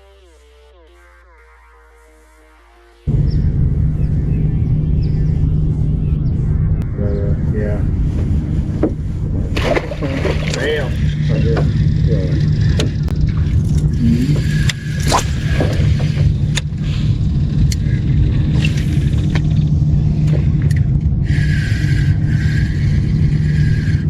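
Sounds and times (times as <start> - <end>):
boat motor humming: 3.0 - 24.0
hiss: 21.3 - 24.0.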